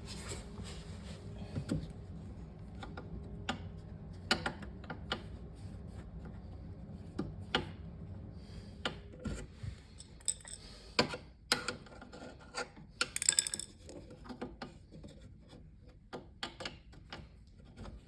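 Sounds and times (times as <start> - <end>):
small metal parts clicking and scraping: 9.9 - 10.8, 13.2 - 14.0.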